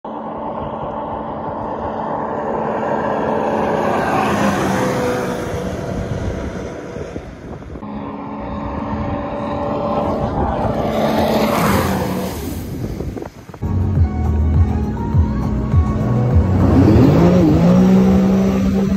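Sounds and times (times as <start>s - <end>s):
personal watercraft engine: 0.0s - 18.9s
wind noise: 0.4s - 14.8s.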